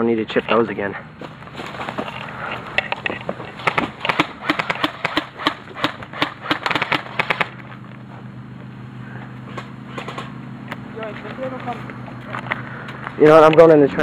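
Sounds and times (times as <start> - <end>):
airsoft guns firing sharp shots: 3.6 - 7.6.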